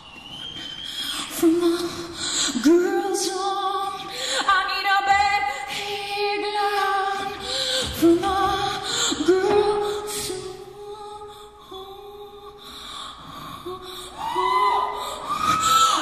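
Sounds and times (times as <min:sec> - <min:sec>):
woman singing: 0:00.9 - 0:16.0.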